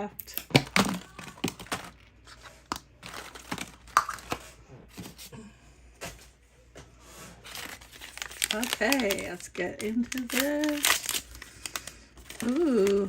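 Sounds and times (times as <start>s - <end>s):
packaging crinkles: 7.4s - 13.0s.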